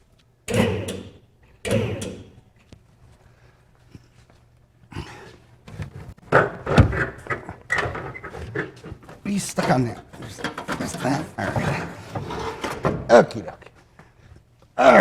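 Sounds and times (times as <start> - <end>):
knocking and scuffing work noises: 5.6 - 14.5.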